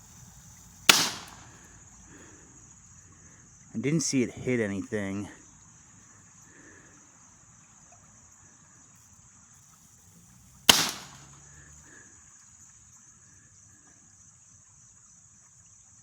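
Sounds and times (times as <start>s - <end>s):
faint high insect drone: 0.0s - 16.0s
launcher shot crack: 0.8s - 1.8s, 10.7s - 11.6s.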